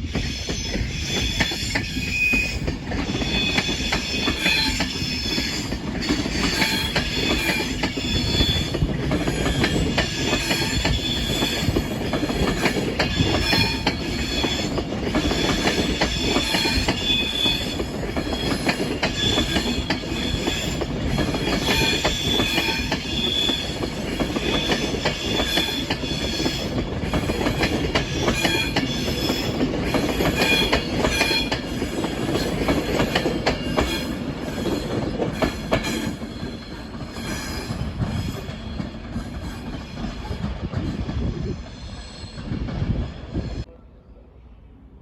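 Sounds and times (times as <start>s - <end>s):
train wheels squealing: 0.0s - 44.2s.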